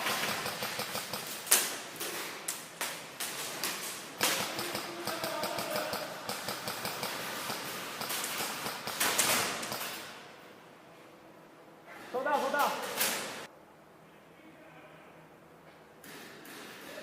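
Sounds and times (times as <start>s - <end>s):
airsoft gun shots: 0.0s - 1.8s, 4.2s - 10.1s.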